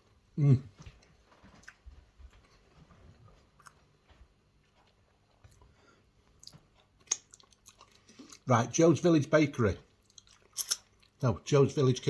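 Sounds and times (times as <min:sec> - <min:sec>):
faint chewing: 0:00.6 - 0:08.5, 0:09.8 - 0:11.2.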